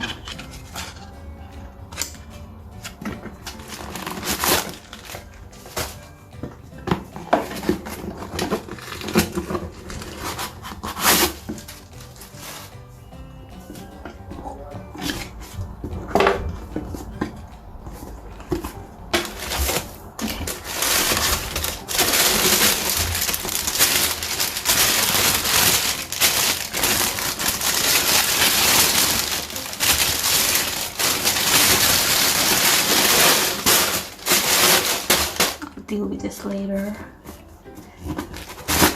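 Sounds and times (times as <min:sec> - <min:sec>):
paper crumpling and crackling: 0:02.8 - 0:13.0, 0:17.9 - 0:35.7, 0:38.0 - 0:38.9.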